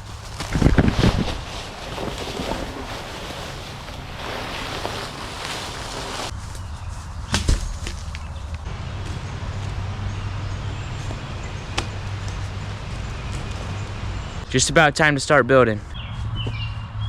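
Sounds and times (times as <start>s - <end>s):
log dragged over leaf litter: 0.0s - 7.0s.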